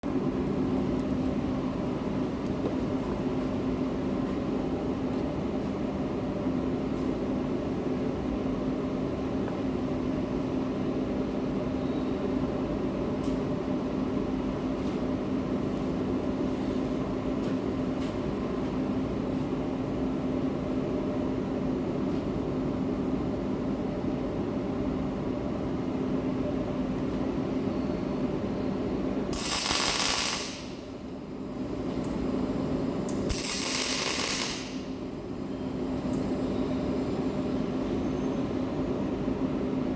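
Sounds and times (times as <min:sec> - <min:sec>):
constant hum: 0:00.0 - 0:39.9
welding arc crackling: 0:29.3 - 0:31.0, 0:33.0 - 0:35.1.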